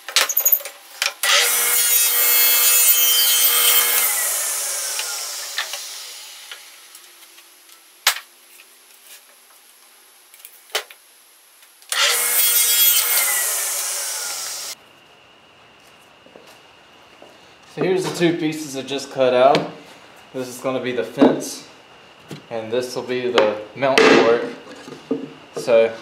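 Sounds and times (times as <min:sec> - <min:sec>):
power saw cutting plywood: 0:01.2 - 0:06.9, 0:11.9 - 0:14.8.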